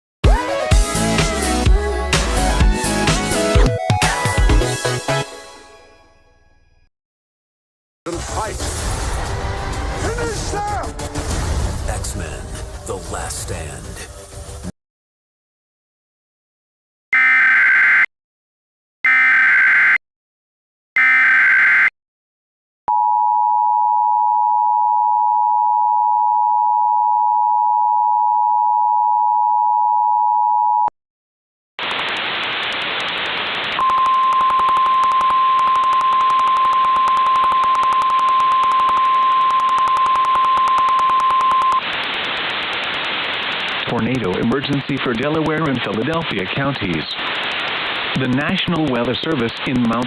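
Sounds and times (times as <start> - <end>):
screeching data bursts: 21.0 - 21.9
radio static hiss: 31.8 - 37.3, 40.1 - 50.0.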